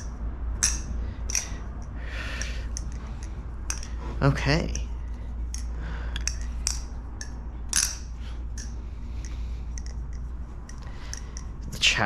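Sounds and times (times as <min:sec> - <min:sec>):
butterfly knife clicking: 0:05.5 - 0:11.5.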